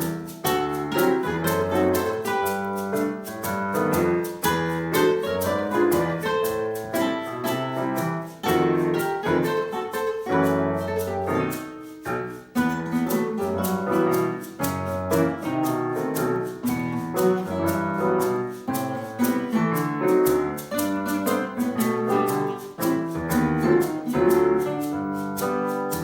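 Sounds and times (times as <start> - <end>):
jazz ensemble with piano and guitar: 0.0 - 26.0
ticking percussion beat: 0.0 - 26.0.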